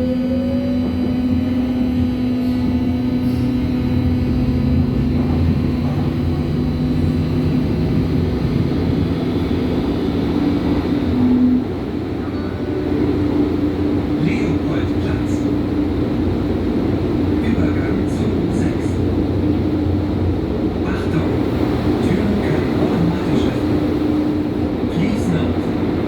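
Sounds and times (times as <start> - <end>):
traction motor hum: 0.0 - 26.0
train rumbling: 0.0 - 26.0.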